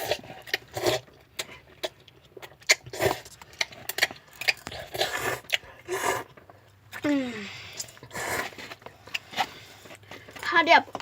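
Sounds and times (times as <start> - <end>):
wet chewing: 0.0 - 7.1, 7.7 - 11.0
noodle slurping: 2.6 - 6.4, 7.8 - 9.8.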